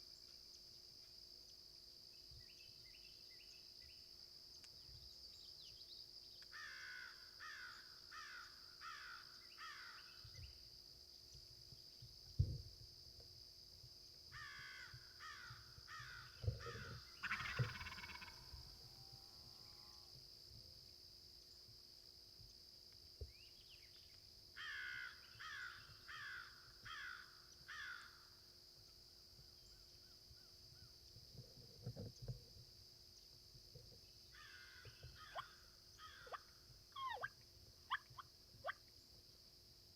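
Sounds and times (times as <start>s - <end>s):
high insect-like hum: 0.0s - 39.9s
crow cawing: 6.6s - 10.0s, 14.4s - 18.4s, 24.6s - 28.2s, 34.4s - 36.3s
high-pitched insect drone: 15.2s - 20.1s.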